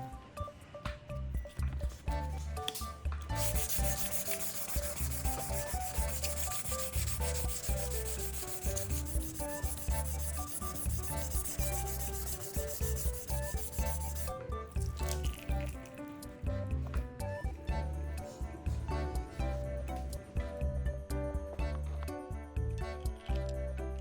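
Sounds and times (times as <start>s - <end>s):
background music with beat: 0.0s - 23.7s
sanding plastic scratching rub: 3.3s - 14.3s.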